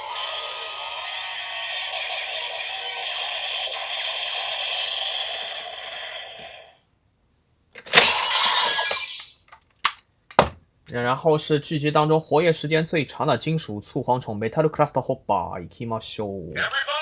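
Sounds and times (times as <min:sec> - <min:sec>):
toy belt electronic sound effects: 0:00.0 - 0:06.6, 0:07.9 - 0:09.4.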